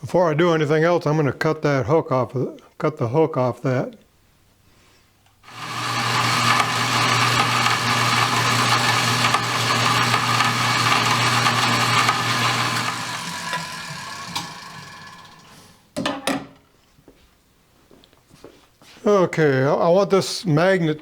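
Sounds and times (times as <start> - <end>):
power tool motor whining: 5.4 - 15.8.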